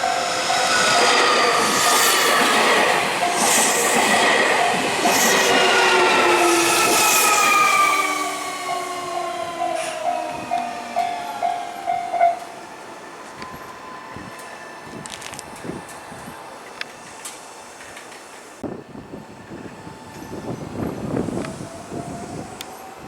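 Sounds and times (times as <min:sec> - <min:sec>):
crossing warning bell dings: 0:00.0 - 0:16.0
electric train motors whining: 0:00.0 - 0:18.5.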